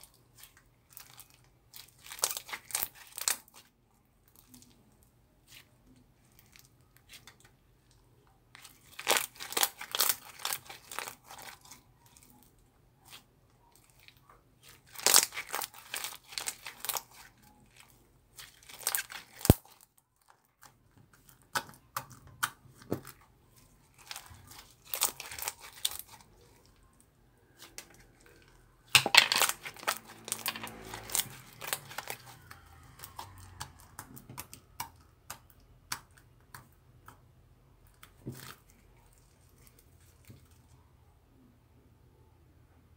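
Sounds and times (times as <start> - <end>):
slime crackling and popping: 0.4 - 3.6, 8.6 - 12.2, 13.0 - 19.9, 23.9 - 26.6, 28.9 - 36.3.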